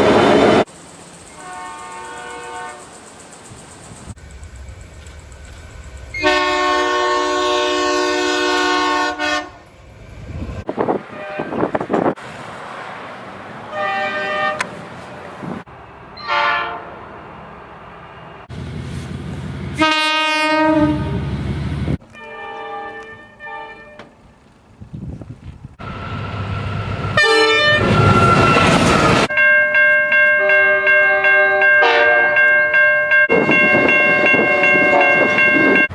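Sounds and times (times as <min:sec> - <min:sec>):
train horn blasts: 0:01.3 - 0:02.9, 0:06.1 - 0:09.7, 0:11.1 - 0:12.0, 0:13.7 - 0:14.7, 0:16.2 - 0:17.0, 0:19.7 - 0:21.3, 0:22.0 - 0:24.4, 0:27.1 - 0:29.4, 0:30.3 - 0:32.4, 0:33.3 - 0:35.9.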